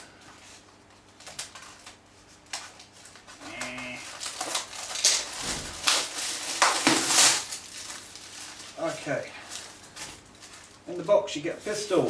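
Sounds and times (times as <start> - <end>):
cardboard packaging rustling: 0.2 - 12.0
clicks and knocks of packaging: 1.2 - 8.1.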